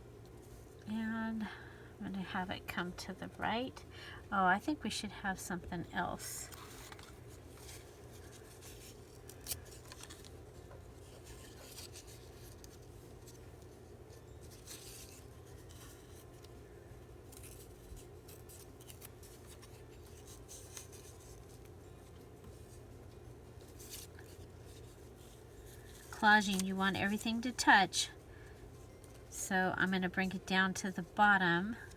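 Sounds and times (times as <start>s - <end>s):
steady low hum: 0.0s - 31.9s
paper rustling: 6.3s - 27.7s.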